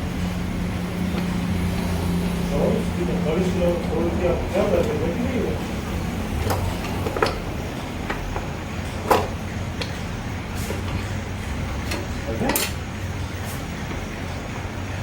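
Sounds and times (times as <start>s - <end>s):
steady low hum: 0.0s - 15.0s
metal tools and parts clinking: 6.3s - 13.2s.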